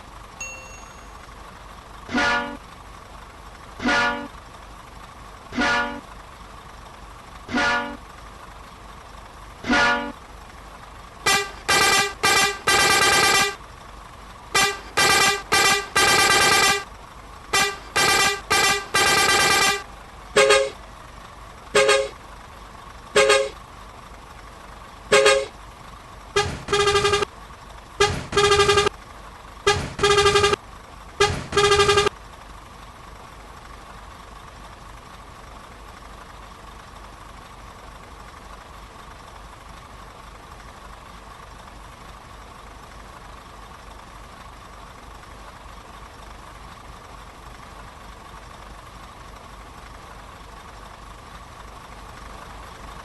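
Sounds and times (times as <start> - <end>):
bus horn tooting: 2.1 - 2.6, 3.8 - 4.4, 5.5 - 6.1, 7.5 - 8.0, 9.6 - 10.2, 11.2 - 13.6, 14.5 - 16.9, 17.5 - 20.8, 21.7 - 22.2, 23.1 - 23.6, 25.1 - 25.6, 26.3 - 27.3, 28.0 - 29.0, 29.6 - 30.6, 31.2 - 32.2.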